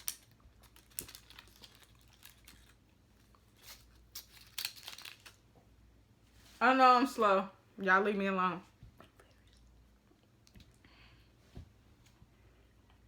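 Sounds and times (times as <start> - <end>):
objects being handled: 0.0 - 5.6.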